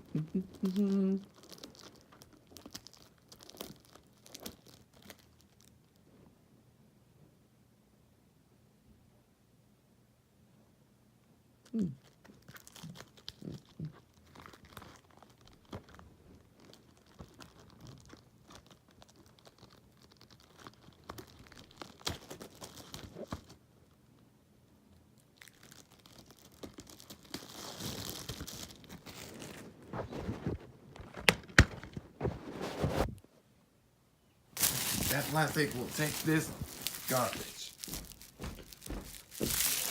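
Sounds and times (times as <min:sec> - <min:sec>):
plastic wrap peeled and torn: 0:00.0 - 0:06.0, 0:11.8 - 0:23.6, 0:25.2 - 0:29.9, 0:34.6 - 0:39.9.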